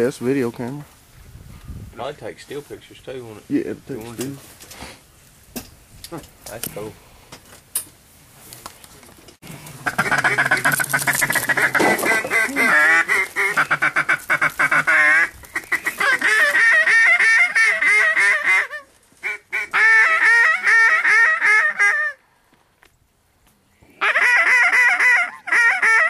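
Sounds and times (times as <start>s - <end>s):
geese honking: 9.5s - 22.2s, 24.0s - 26.0s
ducks quacking: 9.7s - 22.2s.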